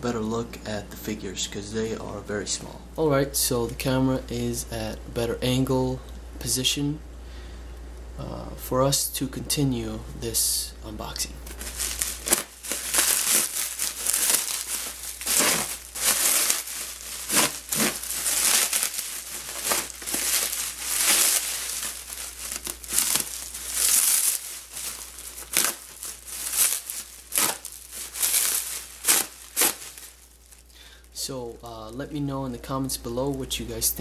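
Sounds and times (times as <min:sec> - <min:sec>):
bag crinkling and rustling: 0:11.4 - 0:31.0.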